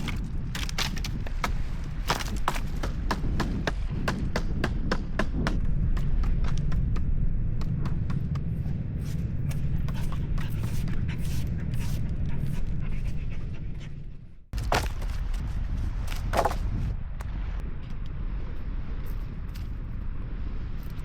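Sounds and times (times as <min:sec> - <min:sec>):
steady low rumble: 0:00.0 - 0:21.0
dog panting: 0:09.8 - 0:14.5.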